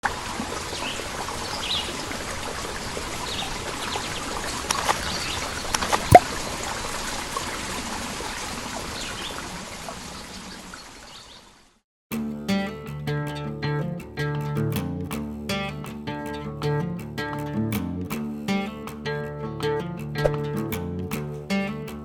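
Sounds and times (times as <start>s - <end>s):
water trickling: 0.0s - 11.8s.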